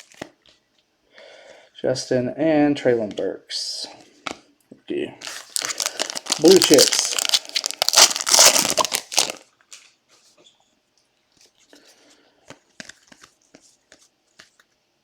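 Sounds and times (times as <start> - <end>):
wrapper crinkling and tearing: 5.2 - 9.9
cards tapping and clicking: 12.5 - 14.6.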